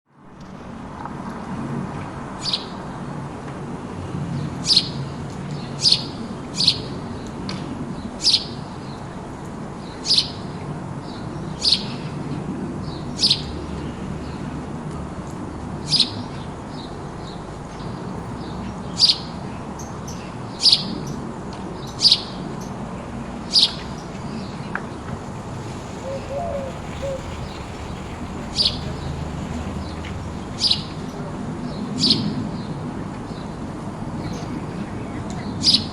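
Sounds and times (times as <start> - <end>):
low background noise: 0.2 - 35.9
sparrow chirping: 11.1 - 12.1, 12.9 - 14.4, 15.8 - 21.2, 21.8 - 22.8, 23.4 - 24.6, 26.0 - 27.7, 28.5 - 29.1, 29.8 - 32.7.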